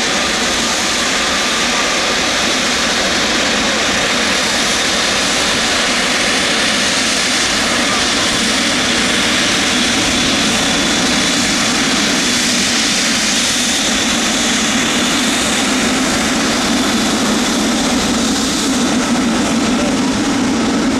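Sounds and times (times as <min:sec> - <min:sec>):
jet engine roar: 0:00.0 - 0:20.9.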